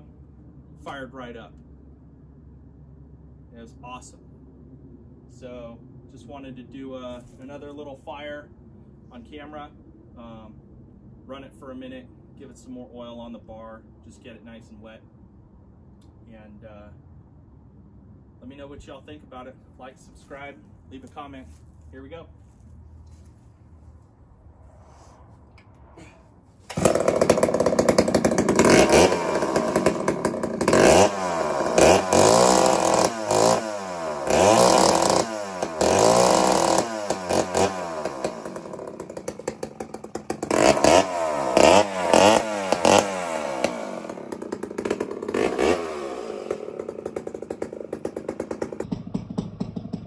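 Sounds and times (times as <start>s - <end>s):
chainsaw revving: 26.6s - 50.0s.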